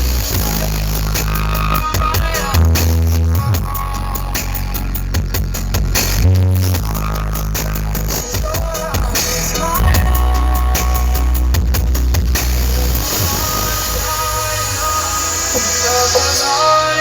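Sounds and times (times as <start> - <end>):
electronic dance music: 0.0 - 17.0.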